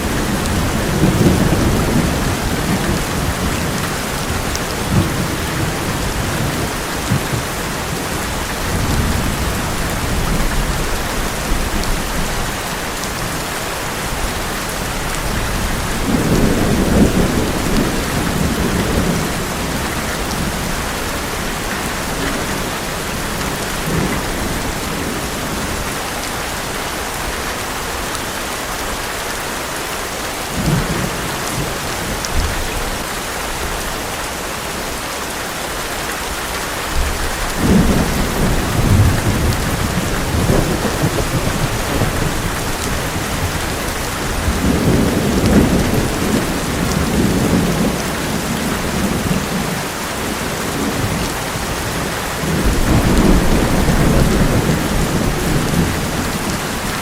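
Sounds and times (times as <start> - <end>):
heavy rain on a metal roof: 0.0 - 57.0
thunder rolling: 15.2 - 22.7, 37.0 - 49.5, 52.4 - 57.0.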